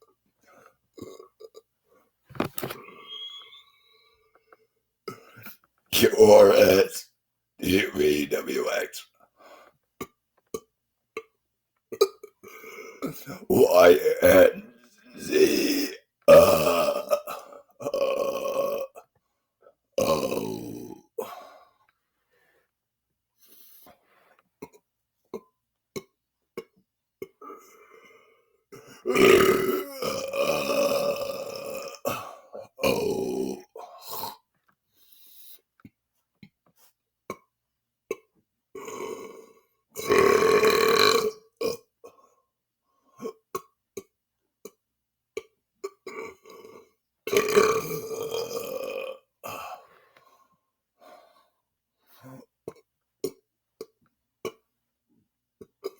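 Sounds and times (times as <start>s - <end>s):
man burping: 0.9s - 1.7s, 5.1s - 7.0s, 7.6s - 9.0s, 11.9s - 19.0s, 20.0s - 21.4s, 28.7s - 34.4s, 38.1s - 42.2s, 45.4s - 49.8s, 55.7s - 55.9s
man belching: 1.0s - 1.7s, 6.0s - 7.0s, 7.6s - 9.0s, 11.9s - 19.0s, 20.0s - 21.3s, 29.0s - 34.4s, 38.1s - 41.9s, 45.4s - 49.8s.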